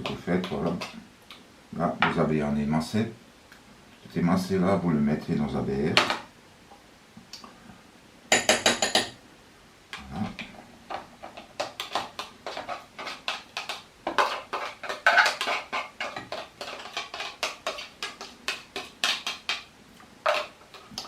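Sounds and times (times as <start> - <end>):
utensil scraping and tapping dishes: 0.0 - 1.0, 8.3 - 9.2, 10.0 - 21.0.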